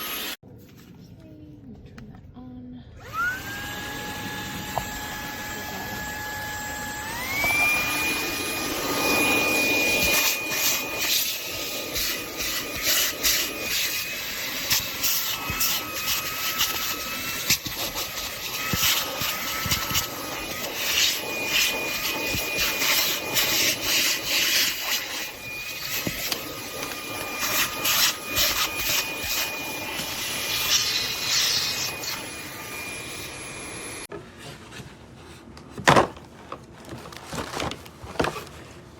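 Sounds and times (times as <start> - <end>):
handheld vacuum motor whine: 0.0 - 0.4, 3.0 - 34.1
vacuum nozzle scraping surface: 3.7 - 33.0.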